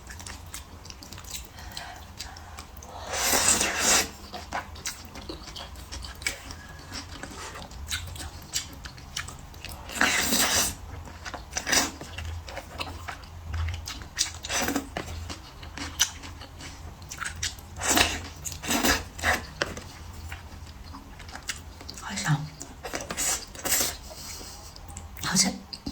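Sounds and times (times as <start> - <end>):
chewing and biting food: 0.0 - 24.1
slurping: 0.9 - 10.8.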